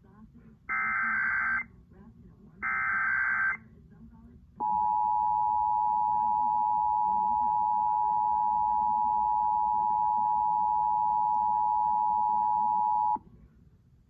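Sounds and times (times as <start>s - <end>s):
two-tone alarm over radio: 0.7s - 1.7s, 2.6s - 3.6s, 4.6s - 13.2s.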